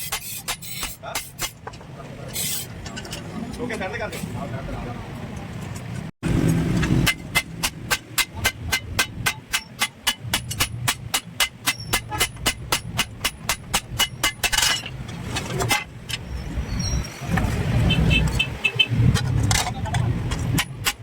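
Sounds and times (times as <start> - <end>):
hammer striking metal: 0.0 - 1.7, 6.6 - 14.9.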